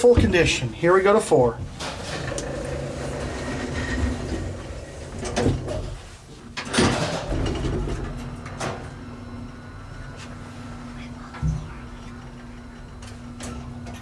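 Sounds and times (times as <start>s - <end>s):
elevator mechanical hum: 0.0s - 14.0s
elevator door swishes and clunks: 1.5s - 9.0s.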